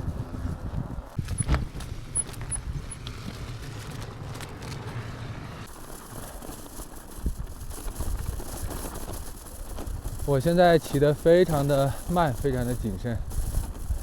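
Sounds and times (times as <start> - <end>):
bicycle rumbling on snow: 0.0 - 14.0.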